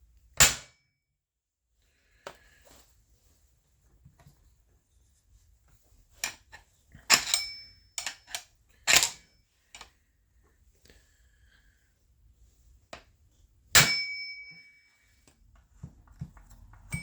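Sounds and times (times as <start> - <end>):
hammer striking metal: 13.8 - 14.7.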